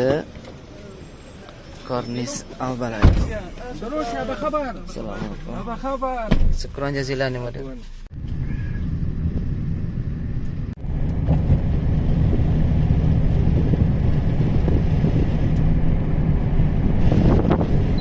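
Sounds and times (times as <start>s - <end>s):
road and engine rumble in car: 0.0s - 18.0s.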